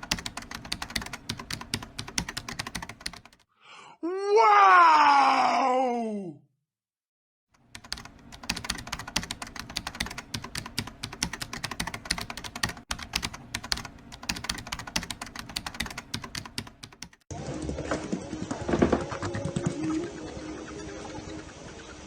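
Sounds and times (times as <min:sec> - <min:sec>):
rapid clicking and tapping: 0:00.0 - 0:03.4, 0:07.6 - 0:17.3.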